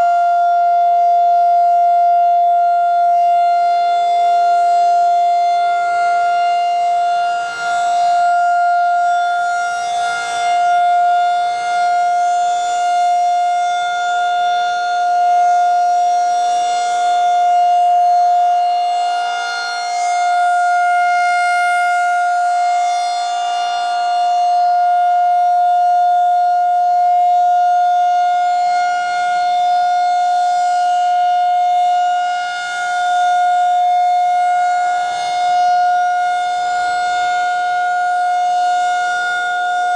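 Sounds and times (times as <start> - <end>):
rotating warning siren: 0.0 - 39.9.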